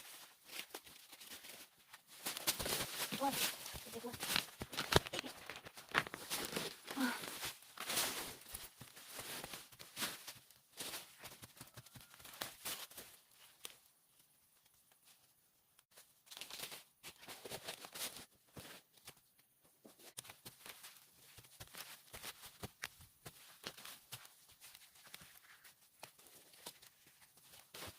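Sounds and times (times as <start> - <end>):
potatoes and soil being handled: 0.0 - 15.2.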